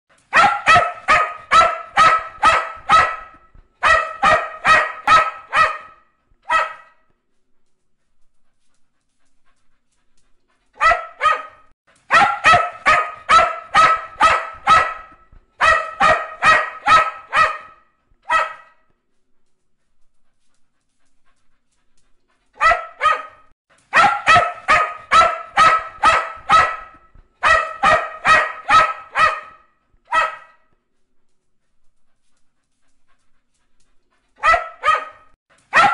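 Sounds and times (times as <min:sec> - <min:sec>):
dog barking: 0:00.3 - 0:07.1, 0:10.8 - 0:18.9, 0:22.6 - 0:30.7, 0:34.4 - 0:35.9.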